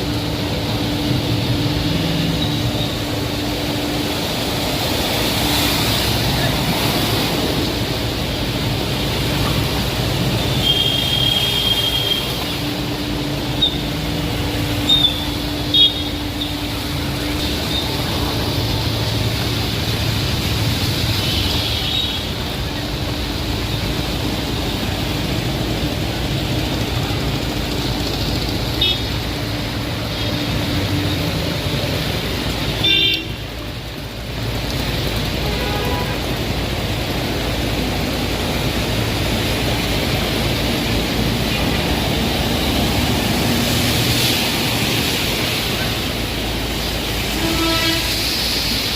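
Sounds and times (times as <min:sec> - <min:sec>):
road traffic noise: 0:00.0 - 0:48.9
vehicle rumble with low hum: 0:00.0 - 0:48.9
vehicle horns tooting: 0:32.8 - 0:33.4, 0:35.4 - 0:36.3, 0:47.3 - 0:48.3.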